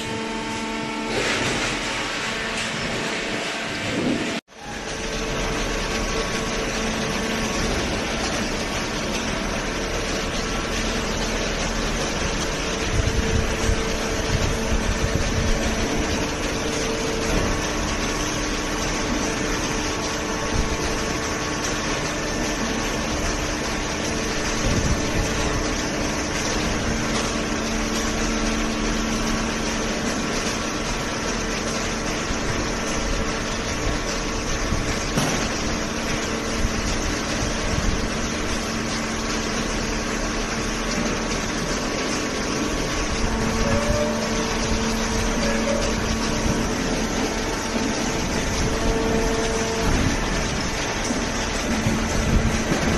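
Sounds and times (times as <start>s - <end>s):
hydraulic baler motor humming: 0.0s - 52.9s.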